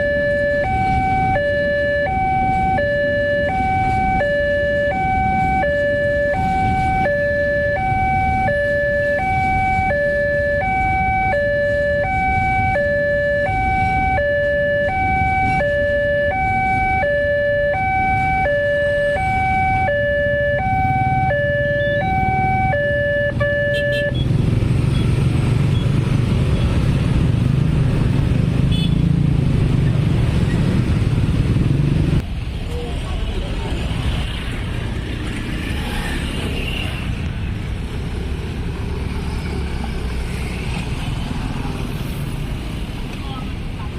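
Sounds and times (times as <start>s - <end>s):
level crossing alarm tones: 0.0s - 24.1s
road traffic noise: 0.0s - 43.9s
vehicle engines: 0.0s - 43.9s.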